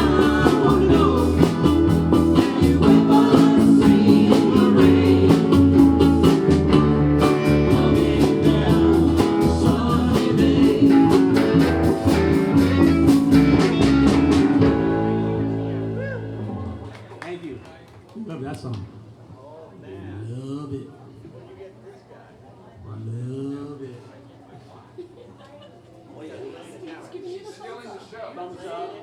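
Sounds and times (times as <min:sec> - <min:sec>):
people singing: 0:00.0 - 0:12.7
ukuleles strumming: 0:00.0 - 0:16.8.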